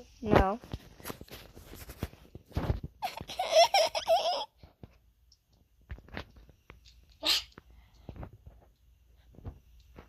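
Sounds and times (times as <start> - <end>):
high-pitched giggle: 3.0 - 4.6.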